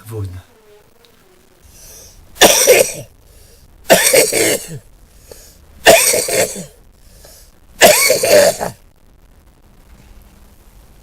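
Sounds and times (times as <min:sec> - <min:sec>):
man coughing: 0:02.4 - 0:03.1, 0:03.9 - 0:04.8, 0:05.8 - 0:06.8, 0:07.8 - 0:08.8.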